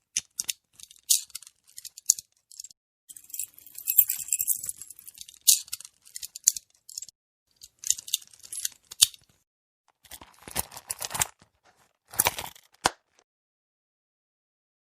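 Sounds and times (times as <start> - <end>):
handcuffs clicking and rattling: 0.1 - 9.4, 10.0 - 11.4.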